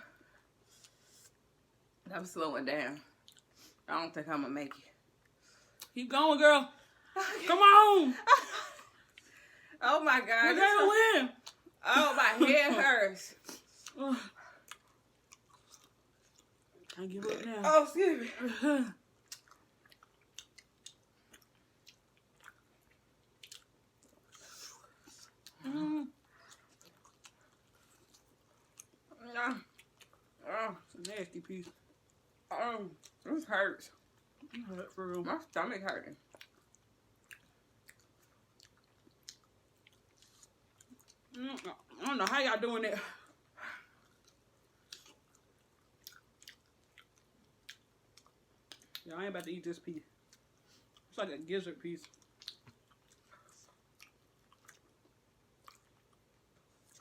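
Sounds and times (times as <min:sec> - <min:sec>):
chewing and crunching chicken: 0:03.1 - 0:03.8, 0:13.4 - 0:17.2, 0:19.2 - 0:33.3, 0:36.1 - 0:42.4, 0:43.2 - 0:49.5, 0:51.9 - 0:57.0.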